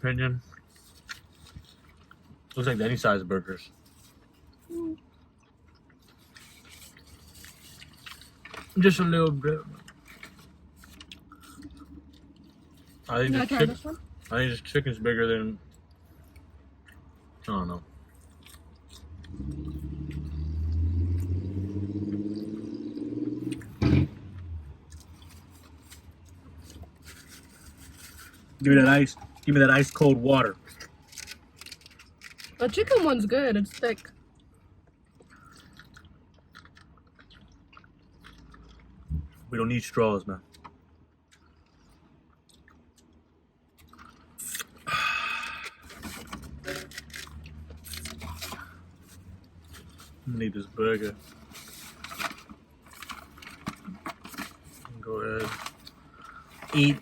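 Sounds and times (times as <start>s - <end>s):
chewing food close-up: 0.4s - 23.8s, 24.4s - 57.0s
vehicle engine revving: 19.0s - 24.9s.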